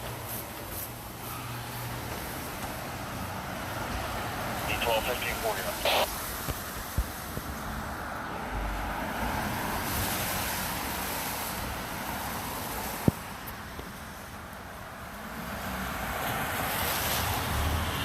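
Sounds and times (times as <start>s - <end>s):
steady rush of noise: 4.4s - 7.9s.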